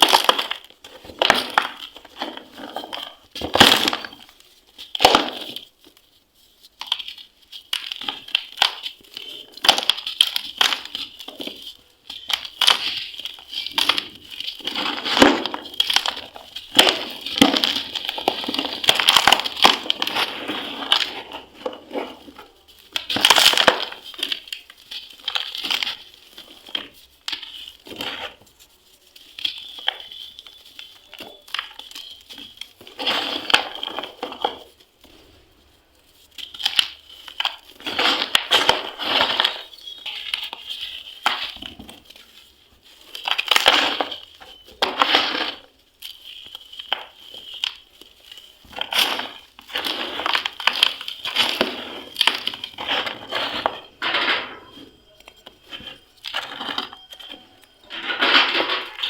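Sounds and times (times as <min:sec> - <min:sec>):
cement crunching by hand: 0:00.0 - 0:06.0, 0:06.8 - 0:28.6, 0:29.3 - 0:35.4, 0:36.4 - 0:59.0.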